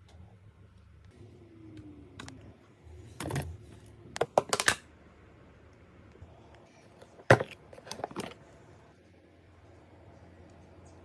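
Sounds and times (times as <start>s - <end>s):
tableware clicking: 4.2s - 4.8s, 7.0s - 8.4s.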